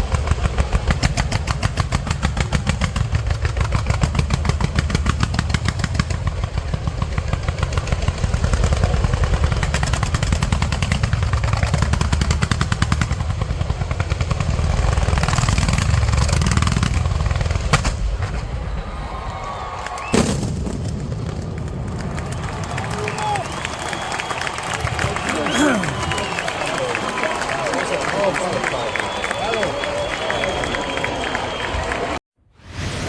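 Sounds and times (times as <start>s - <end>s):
fireworks booms and crackle: 0.0s - 24.1s
fireworks sharp reports: 0.0s - 32.2s.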